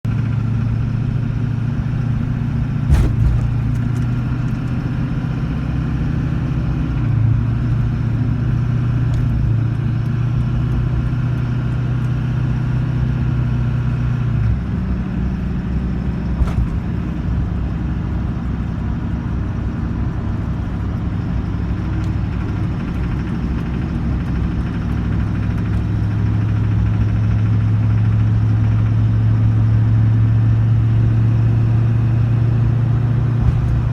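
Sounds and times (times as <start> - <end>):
car engine running: 0.1 - 33.9
sharp engine knocks: 2.2 - 5.0, 16.2 - 17.4, 32.9 - 33.9.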